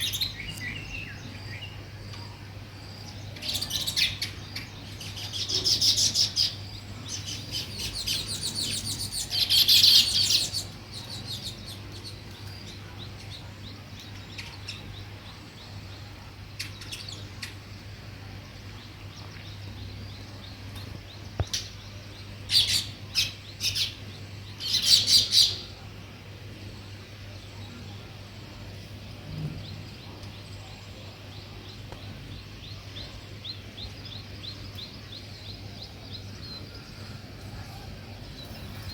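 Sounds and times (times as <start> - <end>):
sparrows chirping: 0.0 - 38.9.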